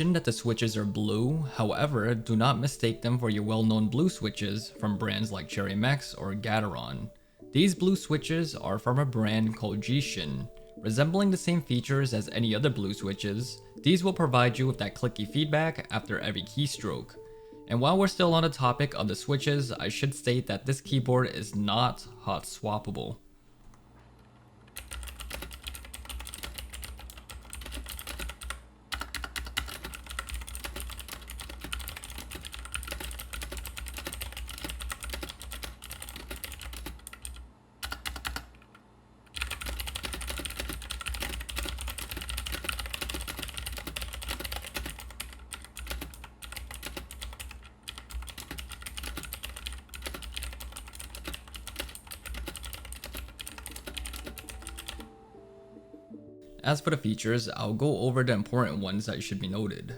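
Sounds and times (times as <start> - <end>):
fast typing on clicky keyboard: 24.8 - 38.7, 39.3 - 55.1.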